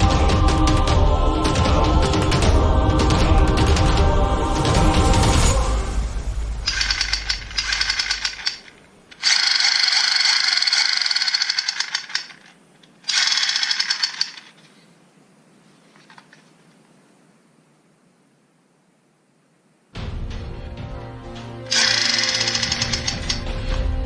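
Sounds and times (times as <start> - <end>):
toy gun rattling bursts: 6.7 - 14.6, 21.7 - 23.5.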